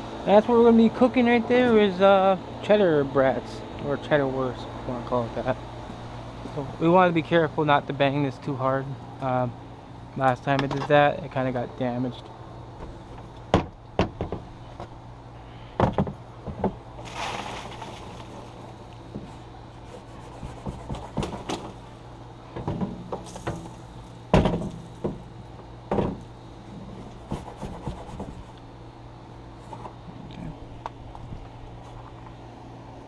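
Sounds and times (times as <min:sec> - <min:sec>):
sharp knocks on grill parts: 0:12.8 - 0:14.9, 0:15.8 - 0:17.1, 0:20.4 - 0:21.8, 0:22.5 - 0:26.3.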